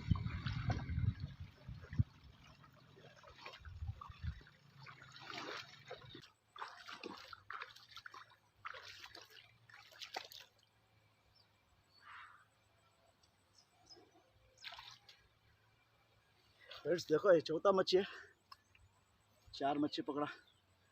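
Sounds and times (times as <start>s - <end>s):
water splashing and dripping: 0.0s - 10.8s, 14.6s - 15.4s.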